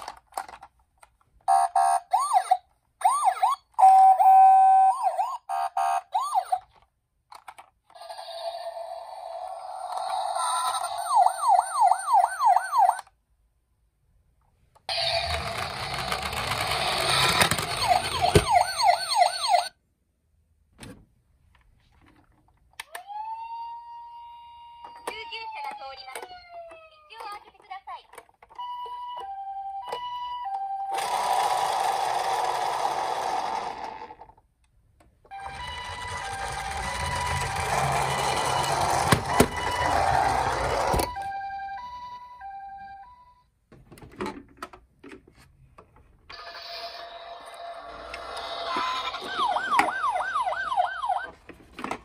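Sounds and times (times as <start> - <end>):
toy electronic siren yelping: 1.5 - 6.7, 8.0 - 13.1, 14.9 - 19.7, 22.9 - 27.4, 35.3 - 43.4, 46.4 - 51.4
toy car rattling down slope: 14.9 - 19.6, 30.9 - 34.4, 35.3 - 41.3, 46.3 - 50.2.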